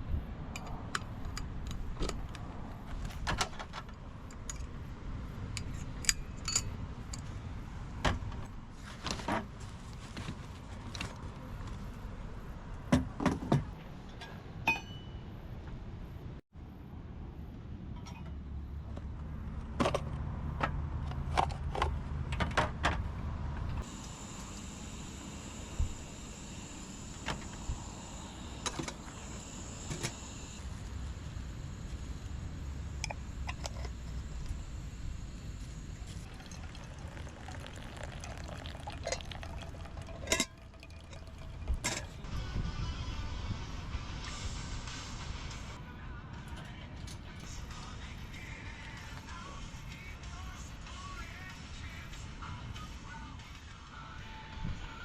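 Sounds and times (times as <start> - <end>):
low steady rumble: 30.7 - 44.3
liquid pouring: 36.0 - 42.3.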